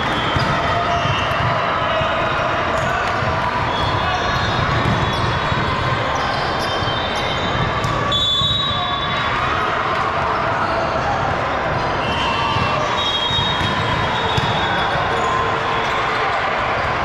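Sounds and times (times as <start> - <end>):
crowd chatter: 0.0 - 17.0.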